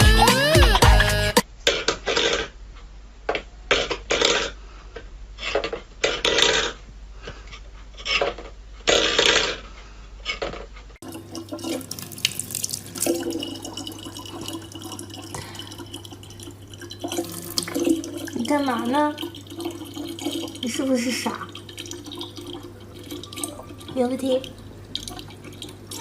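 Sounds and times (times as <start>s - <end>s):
low steady hum: 9.8s - 26.0s
water splashing: 11.0s - 26.0s
water trickling: 11.0s - 26.0s.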